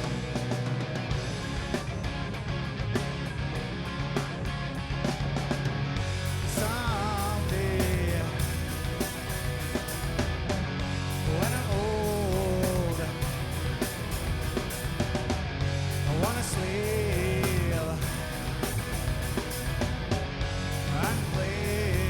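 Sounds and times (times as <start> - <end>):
rock band playing live: 0.0 - 22.0.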